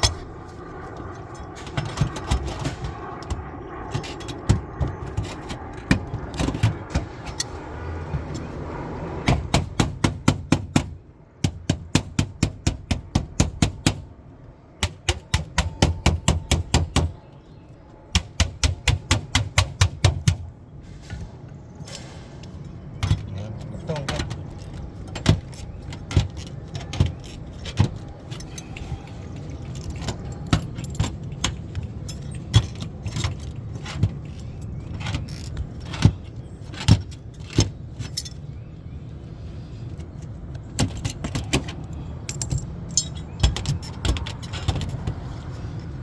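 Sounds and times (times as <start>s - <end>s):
hammer tapping metal roof seam: 9.2s - 14.1s, 14.8s - 17.2s, 18.1s - 20.5s.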